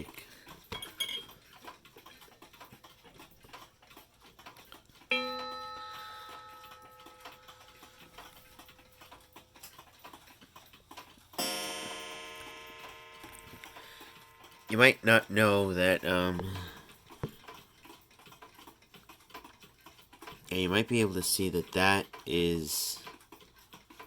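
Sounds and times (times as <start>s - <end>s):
faint clock ticking: 0.0s - 24.0s
clock hammer striking gong: 5.1s - 7.8s, 11.4s - 14.8s.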